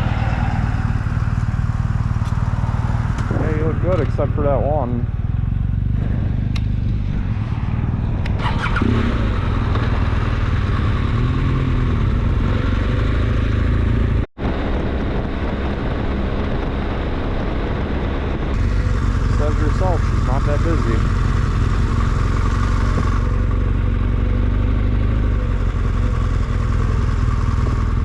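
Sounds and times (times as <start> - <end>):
wind noise: 0.0 - 23.5
motorcycle engine rumbling: 0.0 - 28.0.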